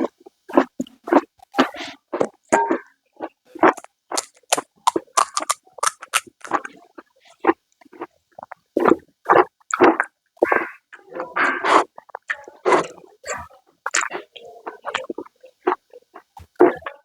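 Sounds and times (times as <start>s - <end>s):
wet chewing and slurping: 0.0s - 17.0s
crisp shells crunching: 3.6s - 6.7s.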